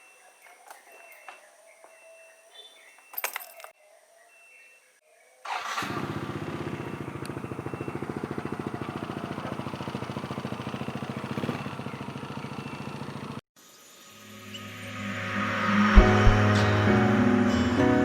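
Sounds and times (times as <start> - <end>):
small motorcycle engine: 5.5 - 13.4.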